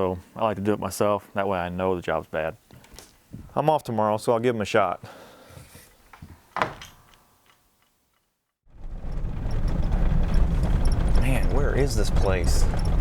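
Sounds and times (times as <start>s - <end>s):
vehicle engine rumble: 8.7s - 13.0s.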